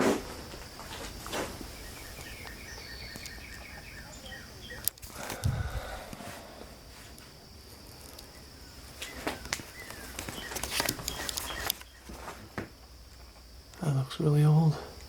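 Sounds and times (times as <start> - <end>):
high-pitched insect drone: 0.0 - 15.0
footsteps crunching on dry debris: 8.9 - 12.7.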